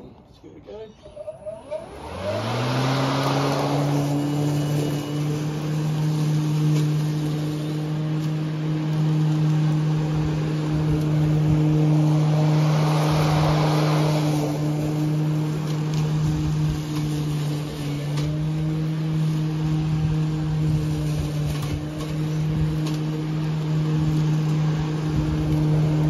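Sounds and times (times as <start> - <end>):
electric lawn mower humming: 1.0 - 26.0
loud rushing noise: 10.1 - 16.8.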